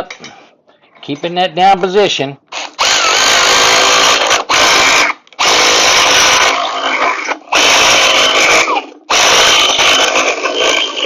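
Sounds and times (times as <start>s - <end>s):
power ratchet running: 2.8s - 6.6s.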